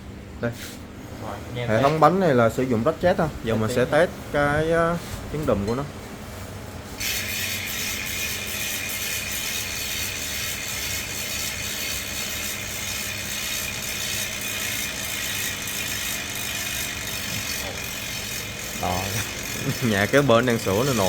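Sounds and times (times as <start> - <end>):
bicycle freehub ticking: 7.0 - 21.0.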